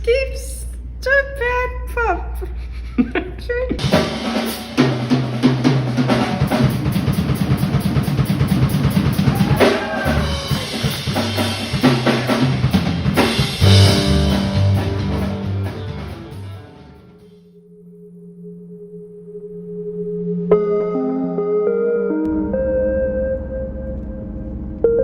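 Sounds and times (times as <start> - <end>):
drum kit and bass beat: 3.8 - 17.1.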